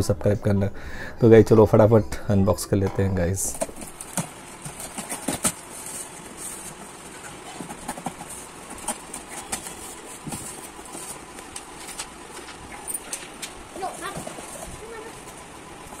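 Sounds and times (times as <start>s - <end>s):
cardboard box rustling: 3.6s - 12.0s.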